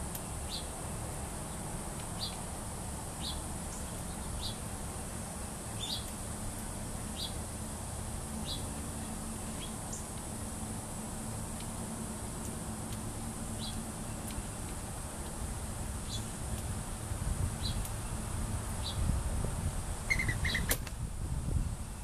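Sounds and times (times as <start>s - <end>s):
low wind rumble: 0.0s - 22.0s
steady high hiss: 0.0s - 22.0s
small bird chirping: 2.2s - 2.4s, 5.8s - 6.1s, 7.1s - 7.4s, 13.6s - 14.7s, 16.0s - 16.4s, 17.6s - 18.2s, 18.8s - 19.1s, 20.1s - 20.8s
sharp click: 20.5s - 21.0s.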